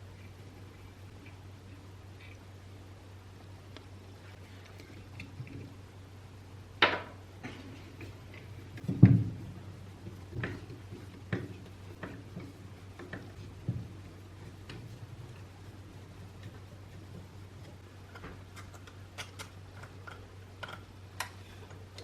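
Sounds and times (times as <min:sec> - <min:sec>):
steady low hum: 0:00.0 - 0:22.0
low thump: 0:08.9 - 0:09.5.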